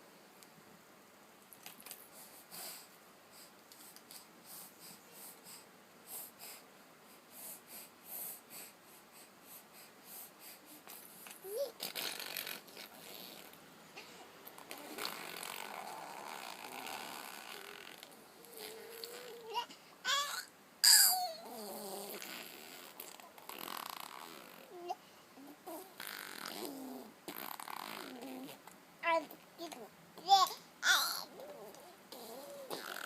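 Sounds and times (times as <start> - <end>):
baby blowing lips: 10.8 - 13.6, 14.6 - 19.6, 20.3 - 24.8, 25.7 - 28.6, 32.1 - 33.0.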